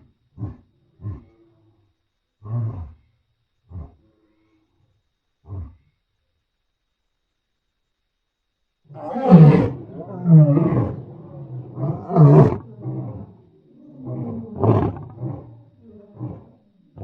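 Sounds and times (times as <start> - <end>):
lion grunting calls: 8.9 - 17.0
lion roaring: 8.9 - 17.0.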